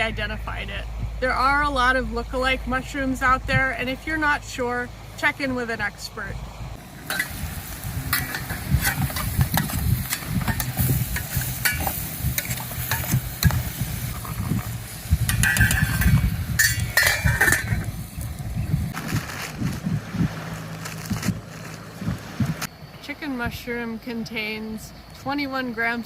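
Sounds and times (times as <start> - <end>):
low rumble: 6.2 - 23.0
mushroom sizzling in oil: 6.8 - 19.4
utensil scraping a pot: 7.1 - 18.0.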